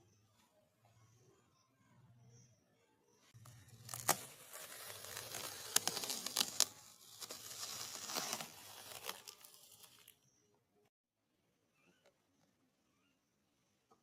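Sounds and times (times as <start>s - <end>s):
packaging tearing and crinkling: 3.7s - 10.2s.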